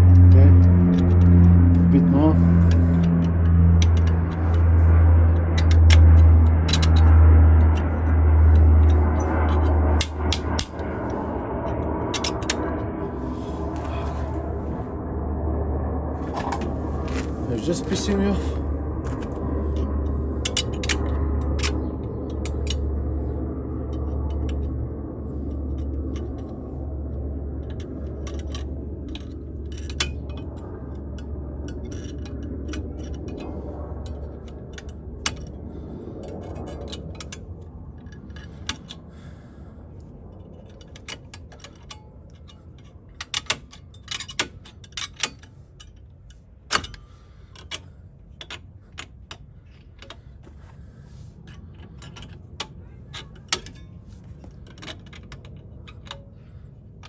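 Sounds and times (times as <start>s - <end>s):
low steady hum: 0.0s - 57.0s
metal brake parts clinking: 2.6s - 10.8s, 40.5s - 57.0s.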